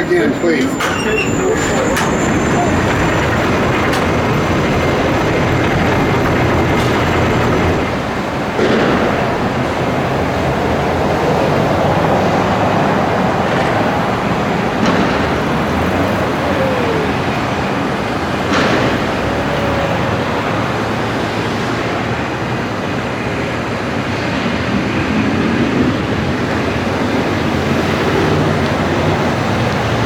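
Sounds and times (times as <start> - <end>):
falling squeal: 0.0 - 8.0
hoist mechanical rumble: 0.0 - 10.2.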